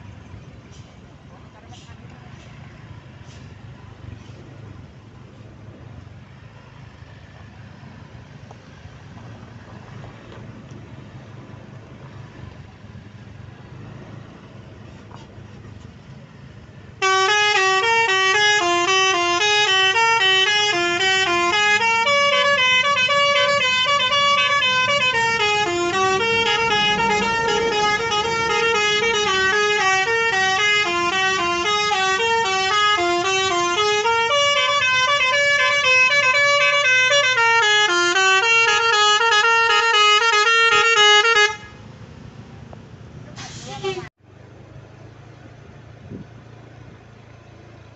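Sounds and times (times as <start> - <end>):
engine and road rumble: 0.0 - 47.9
bus musical horn playing tune: 17.0 - 41.8.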